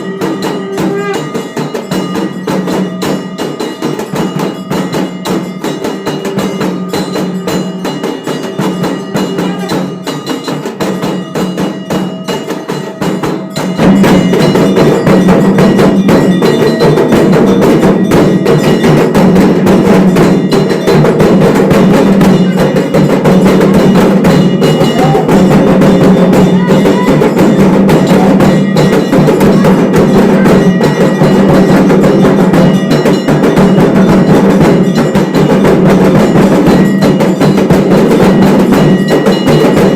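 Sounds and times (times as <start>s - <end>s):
temple bells and percussion: 0.0s - 39.9s.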